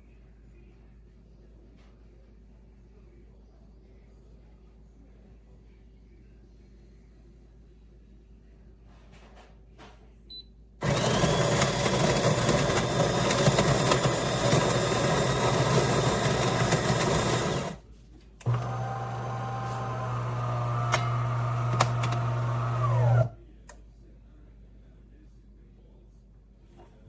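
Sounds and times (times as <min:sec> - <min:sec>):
coffee grinder grinding beans: 0:10.8 - 0:17.8, 0:18.4 - 0:23.3
espresso machine pump humming: 0:10.8 - 0:17.8, 0:18.4 - 0:23.3.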